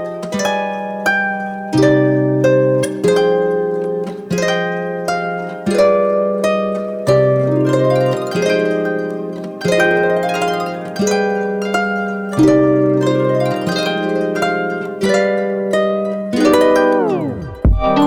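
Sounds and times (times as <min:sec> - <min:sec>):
harp-like plucked string music: 0:00.0 - 0:18.0.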